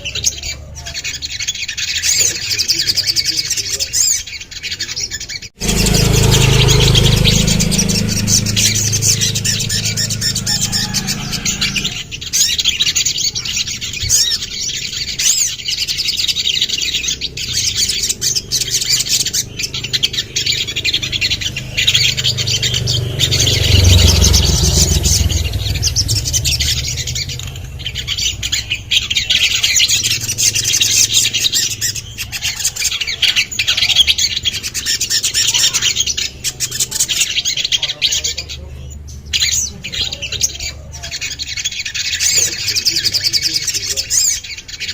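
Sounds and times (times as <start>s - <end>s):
bird chirping and trilling: 0.0s - 44.9s
low rumble: 5.6s - 12.4s, 18.3s - 30.8s.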